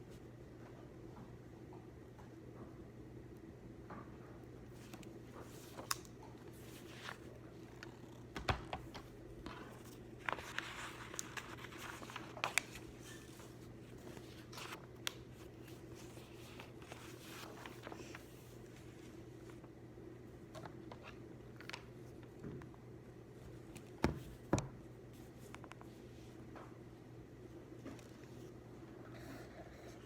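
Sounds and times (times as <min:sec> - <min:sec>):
low room hum: 0:00.0 - 0:30.0
paper rustling: 0:04.8 - 0:19.6.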